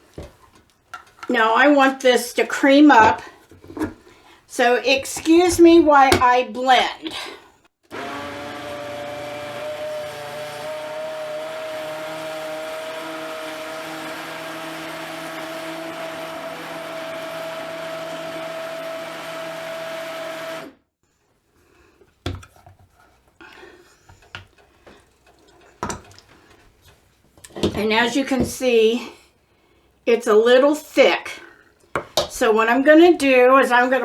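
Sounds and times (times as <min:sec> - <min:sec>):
blender whining: 0:07.9 - 0:20.8.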